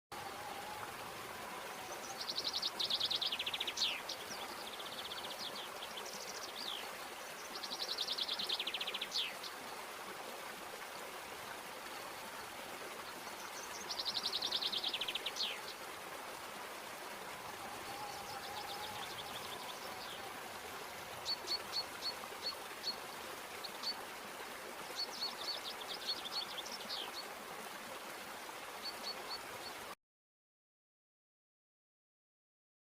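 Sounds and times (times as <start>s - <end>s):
stream running: 0.1s - 30.0s
songbird singing: 0.4s - 9.5s, 13.1s - 15.8s, 17.3s - 23.0s.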